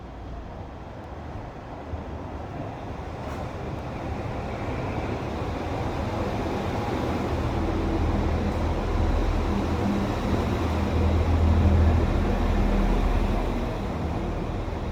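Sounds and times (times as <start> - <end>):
diesel train engines humming: 5.8 - 14.9.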